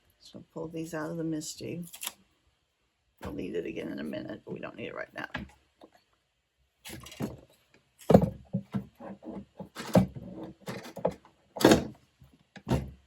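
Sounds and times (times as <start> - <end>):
tools knocking and clattering: 8.0 - 12.0.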